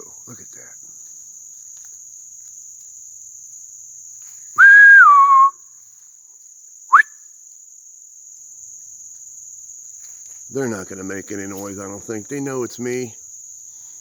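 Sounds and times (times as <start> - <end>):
crickets trilling: 0.0 - 14.0
person whistling a call: 4.6 - 5.6, 6.9 - 7.1.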